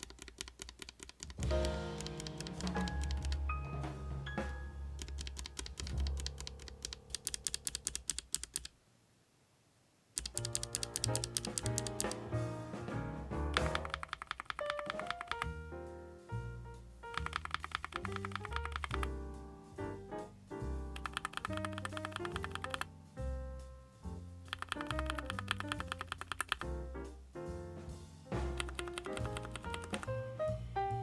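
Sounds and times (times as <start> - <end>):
fast typing on a keyboard: 0.0 - 3.4, 5.0 - 8.7, 10.2 - 12.2, 13.6 - 15.6, 17.1 - 19.1, 21.0 - 22.9, 24.5 - 26.7, 28.6 - 30.1
background music: 1.4 - 8.2, 10.2 - 31.0.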